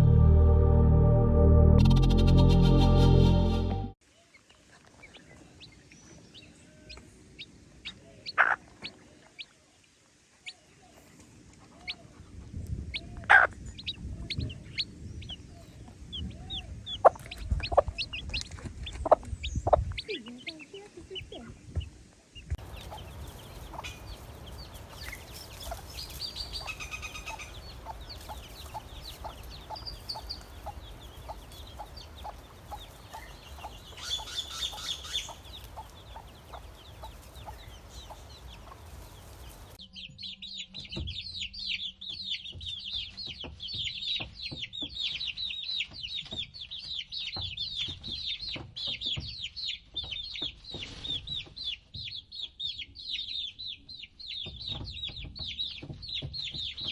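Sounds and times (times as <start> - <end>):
baby chicks peeping: 4.3 - 56.9
hen clucking: 7.8 - 9.0, 12.9 - 21.9, 22.6 - 39.8.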